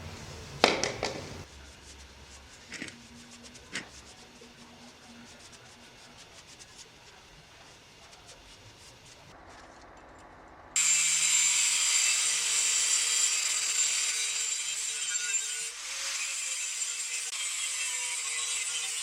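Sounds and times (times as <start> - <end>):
power tool grinding: 2.6 - 5.2, 10.8 - 19.0.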